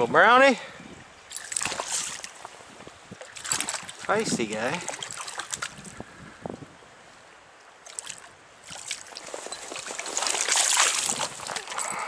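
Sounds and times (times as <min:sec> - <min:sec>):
water splashing and sloshing: 0:01.2 - 0:06.0, 0:07.7 - 0:12.0.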